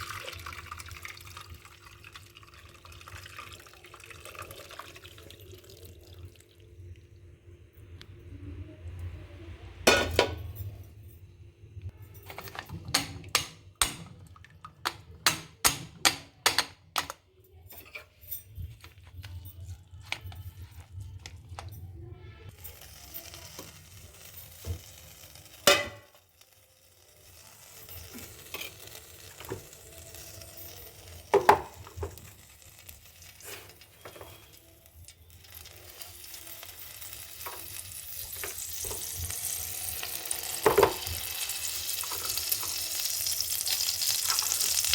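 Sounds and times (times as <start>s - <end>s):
utensil knocking on pan: 14.8s - 17.2s
food sizzling in a pan: 22.5s - 44.9s.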